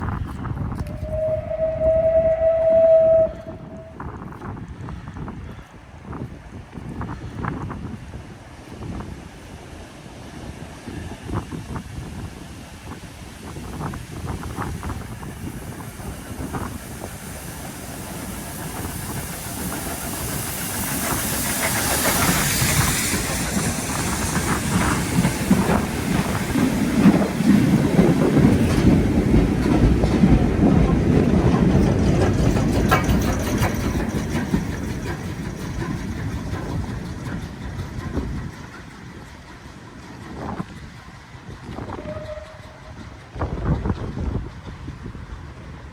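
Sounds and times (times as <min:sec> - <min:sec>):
steam hiss: 0:08.8 - 0:43.3
wagons clattering over rail joints: 0:13.8 - 0:45.6.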